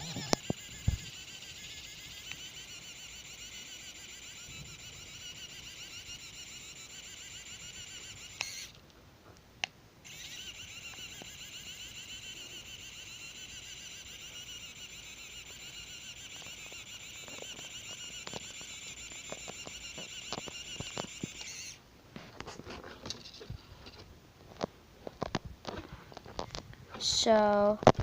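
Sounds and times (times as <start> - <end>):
pen motor whirring: 0.0 - 8.8, 10.0 - 21.8.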